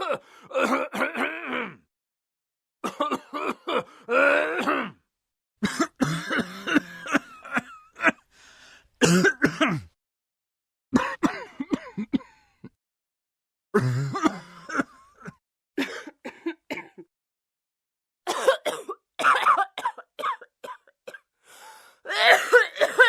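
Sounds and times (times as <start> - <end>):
person coughing: 0.0 - 1.8, 2.9 - 5.0, 5.6 - 8.2, 9.0 - 10.0, 11.0 - 12.4, 13.8 - 17.1, 18.3 - 21.2, 22.1 - 23.0.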